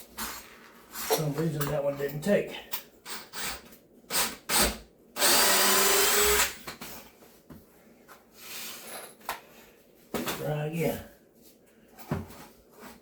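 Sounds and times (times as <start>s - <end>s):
power drill driving screw: 3.1s - 6.6s.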